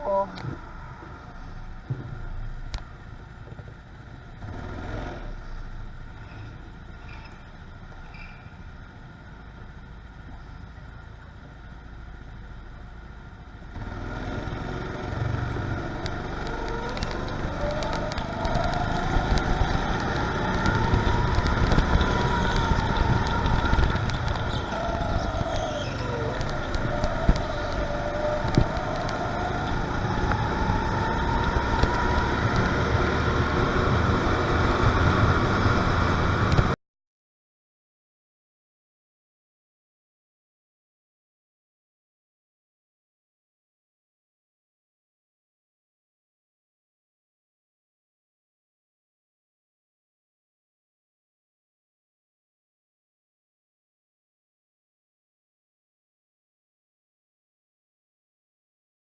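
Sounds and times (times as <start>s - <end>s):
go-kart engine revving: 4.4s - 5.7s, 13.7s - 36.8s.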